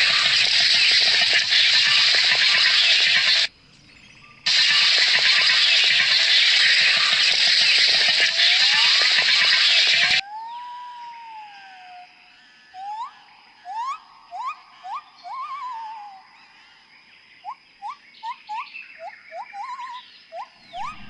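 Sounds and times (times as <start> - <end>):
animal whistling calls: 0.0 - 11.9, 12.8 - 16.3, 17.4 - 21.0
loud rush of noise: 20.7 - 21.0.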